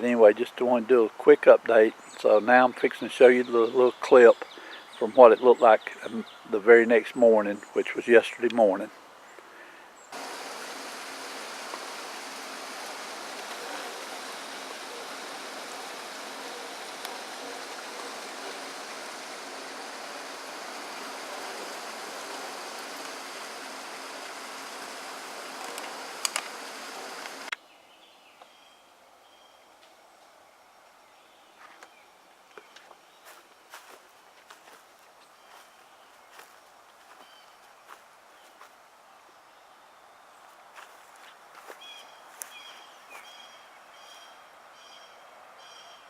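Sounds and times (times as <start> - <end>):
sharp clicks: 24.2 - 27.6.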